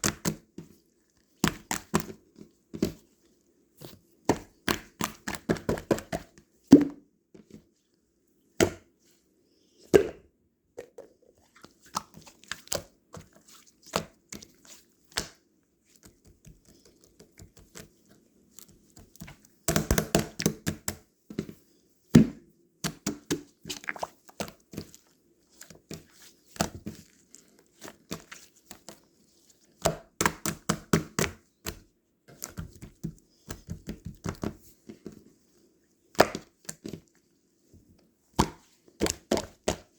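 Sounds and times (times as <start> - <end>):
container taps and clicks: 10.0 - 11.4.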